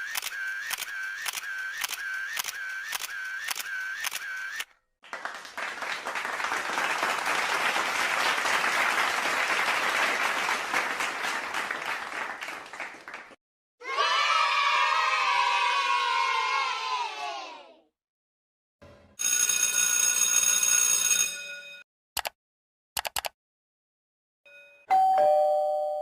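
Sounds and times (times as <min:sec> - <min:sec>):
applause: 0:05.0 - 0:13.4
clicks with short tones: 0:23.0 - 0:23.4.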